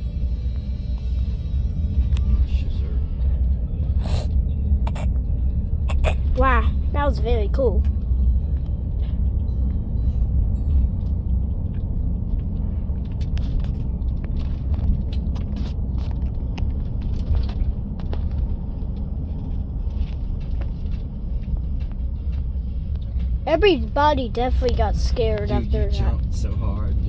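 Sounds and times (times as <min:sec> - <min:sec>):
low rumble: 0:00.0 - 0:27.0.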